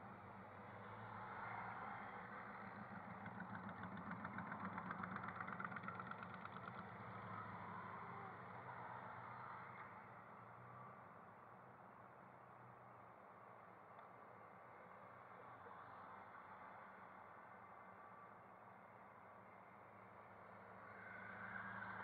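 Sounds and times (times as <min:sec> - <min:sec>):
truck engines running: 0:00.0 - 0:10.2.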